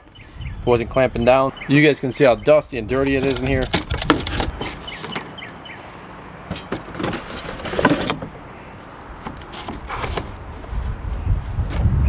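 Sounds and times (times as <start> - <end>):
clicks and knocks of mower parts: 2.9 - 11.2.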